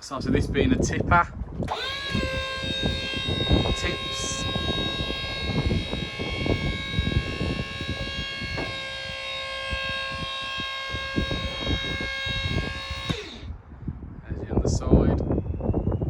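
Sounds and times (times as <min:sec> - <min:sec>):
hydraulic pump whining: 0:01.6 - 0:13.8.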